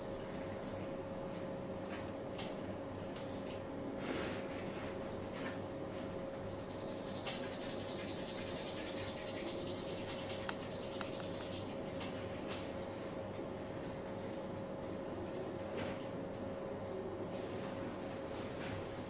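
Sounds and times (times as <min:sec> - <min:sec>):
faint steady hum: 0:00.0 - 0:19.0
hands rubbing over skin: 0:06.5 - 0:12.6.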